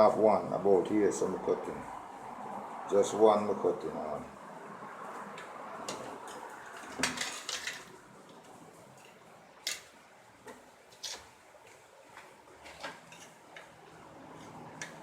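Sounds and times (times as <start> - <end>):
window parts clinking: 5.8 - 8.0.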